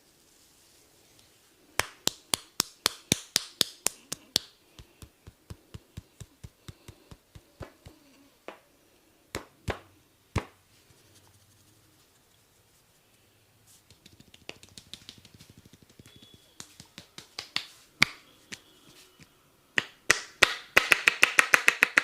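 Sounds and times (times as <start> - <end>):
hands snapping: 1.8 - 8.6, 13.9 - 18.7.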